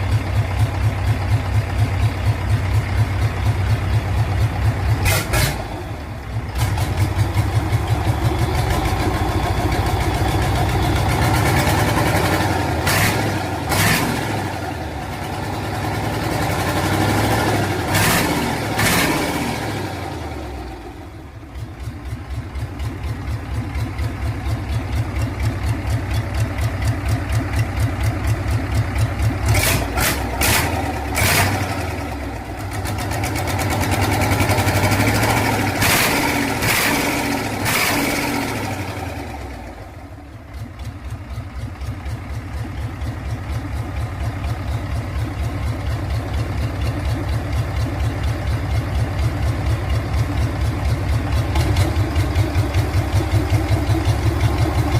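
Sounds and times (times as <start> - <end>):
engine running: 0.0 - 54.9.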